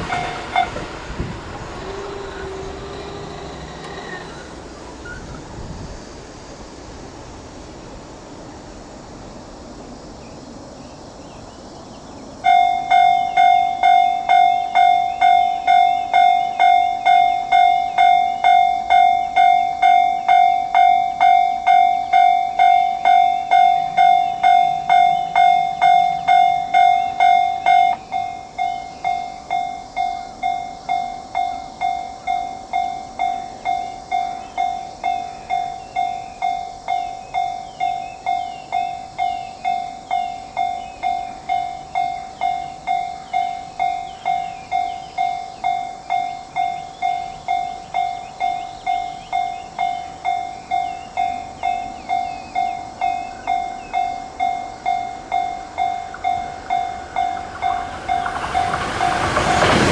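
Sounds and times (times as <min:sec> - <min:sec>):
level crossing warning bell: 0:00.0 - 0:05.2, 0:12.4 - 0:59.9.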